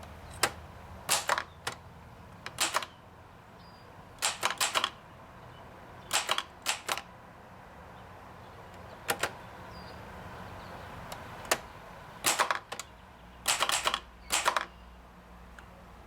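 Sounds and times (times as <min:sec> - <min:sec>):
typewriter keystrokes: 0:00.3 - 0:01.8, 0:02.4 - 0:03.0, 0:04.2 - 0:05.0, 0:06.1 - 0:07.1, 0:09.0 - 0:09.4, 0:11.4 - 0:14.7.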